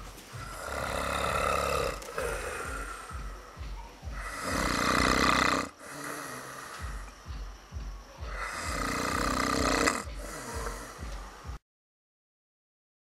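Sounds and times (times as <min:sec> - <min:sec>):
quiet breath: 0:00.2 - 0:04.7, 0:05.8 - 0:07.4, 0:10.1 - 0:11.6
person snoring loudly: 0:00.4 - 0:07.1, 0:08.3 - 0:11.2.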